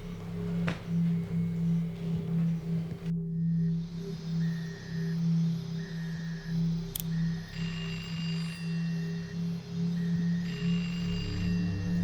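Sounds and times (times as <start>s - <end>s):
low electronic drone hum: 0.0s - 12.0s
high whistling tones: 3.4s - 12.0s.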